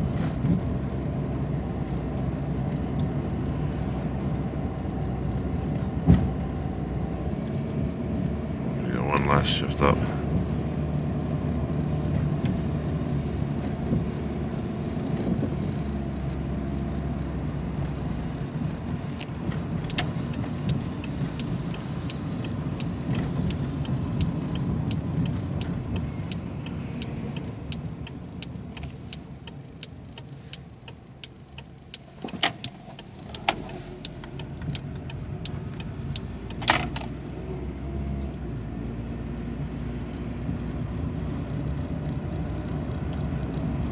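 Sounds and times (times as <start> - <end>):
car engine and road drone: 0.0 - 43.9
regular ticking: 19.8 - 37.1.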